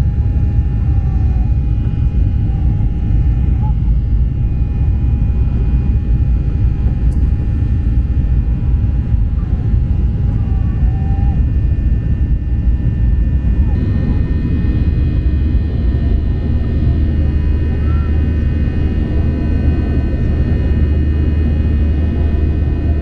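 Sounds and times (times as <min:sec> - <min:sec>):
faint hum tones: 0:00.0 - 0:23.0
jet cabin engine rumble: 0:00.0 - 0:23.0.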